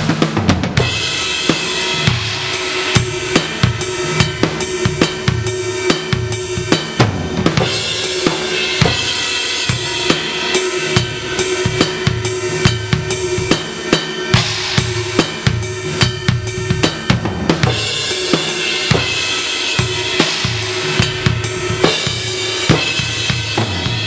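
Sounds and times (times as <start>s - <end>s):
cymbal wash: 0.0s - 24.0s
electronic drum kit groove: 0.0s - 24.0s.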